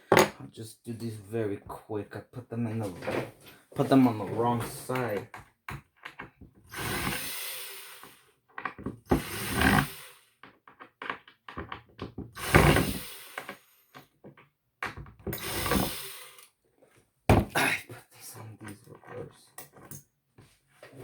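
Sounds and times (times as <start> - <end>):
impact driver whirring and hammering: 6.7 - 8.2, 9.1 - 10.1, 12.4 - 13.6, 15.3 - 16.4
small clicks and knocks: 8.5 - 9.0, 10.4 - 12.3.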